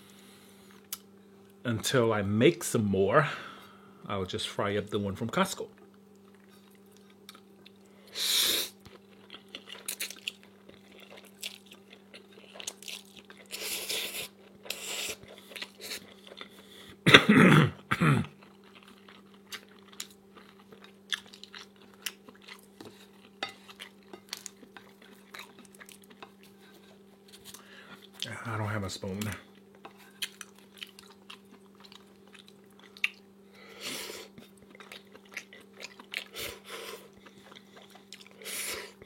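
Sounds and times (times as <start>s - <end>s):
faint hum: 0.0s - 39.0s
chewing and crunching food: 5.6s - 8.1s, 8.7s - 17.0s, 18.2s - 39.0s
cough or throat noise: 17.0s - 18.4s.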